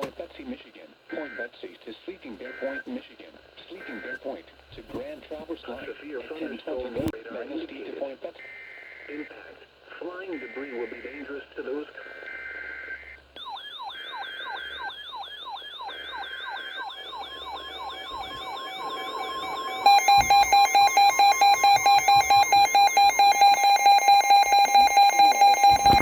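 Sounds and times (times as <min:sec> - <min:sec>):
fast alarm beeping: 0:13.4 - 0:26.0
steady alarm tone: 0:13.4 - 0:26.0
yelping siren: 0:13.4 - 0:26.0.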